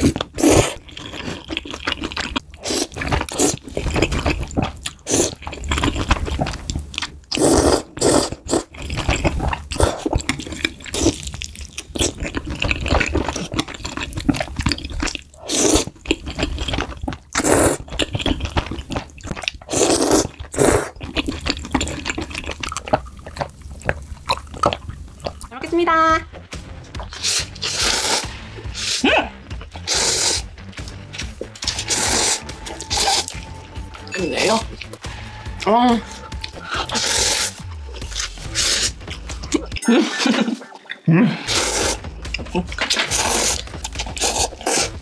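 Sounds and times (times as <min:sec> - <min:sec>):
chewing: 0:00.0 - 0:25.5, 0:26.9 - 0:35.1, 0:36.3 - 0:45.0
wet slurping of noodles: 0:07.3 - 0:11.3, 0:12.0 - 0:18.2, 0:19.7 - 0:22.2, 0:27.1 - 0:29.0, 0:29.7 - 0:30.5, 0:31.7 - 0:33.4, 0:40.4 - 0:42.0, 0:43.0 - 0:45.0.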